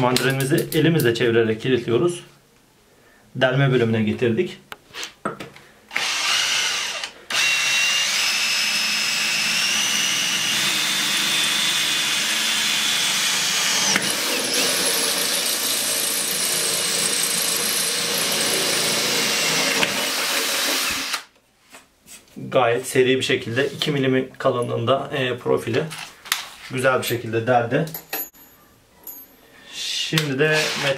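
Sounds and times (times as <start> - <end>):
power drill drilling through metal: 5.9 - 21.3, 30.5 - 30.9.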